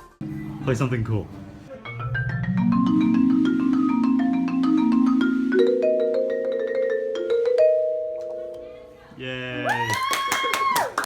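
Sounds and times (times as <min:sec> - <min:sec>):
tuned mallet percussion playing: 0:01.8 - 0:09.0.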